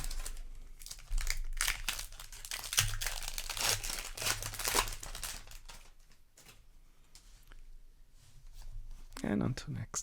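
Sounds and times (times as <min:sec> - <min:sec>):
foil wrapper crinkling: 0:00.0 - 0:06.6.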